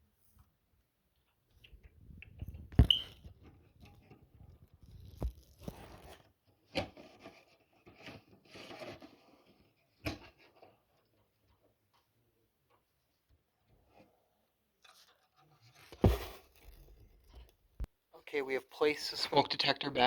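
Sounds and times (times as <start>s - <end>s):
plastic rubbing and scraping: 1.7s - 12.1s, 14.8s - 17.9s.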